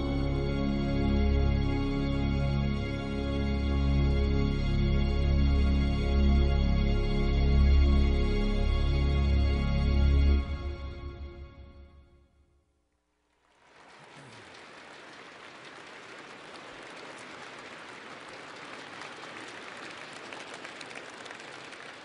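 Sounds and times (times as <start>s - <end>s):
large audience applauding: 13.3s - 22.0s.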